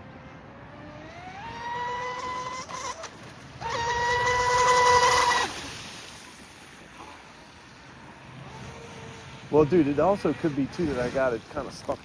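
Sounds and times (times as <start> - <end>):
electric boat motor whine: 0.0 - 11.0.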